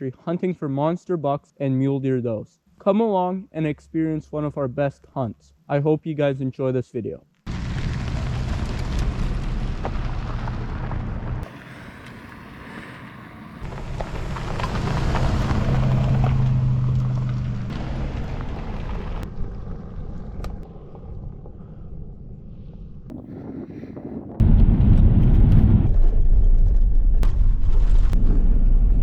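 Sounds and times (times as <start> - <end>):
vehicle engine droning: 7.5 - 21.8
wind rumble on microphone: 7.6 - 29.0.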